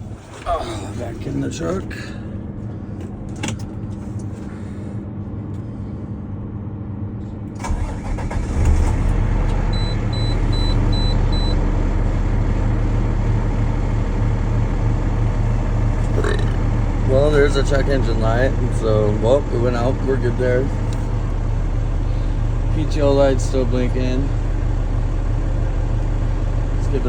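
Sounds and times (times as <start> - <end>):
truck engine starting and idling: 0.0 - 5.0, 7.5 - 27.0
clicks and knocks in cab: 3.0 - 4.0
dashboard warning chime: 9.7 - 11.6.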